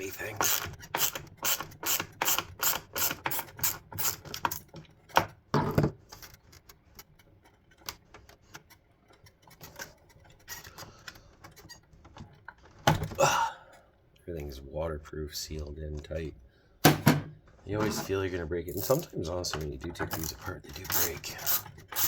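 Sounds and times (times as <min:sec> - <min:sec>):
ratchet tool clicking: 0:00.4 - 0:04.2, 0:20.1 - 0:22.0.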